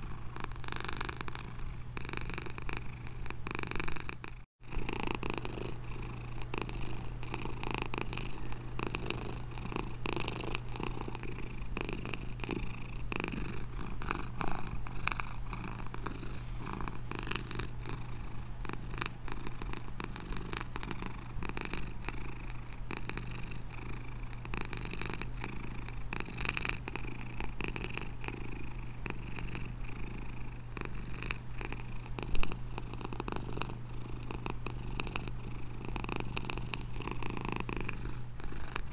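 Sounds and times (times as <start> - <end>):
cat purring: 0.0 - 38.9.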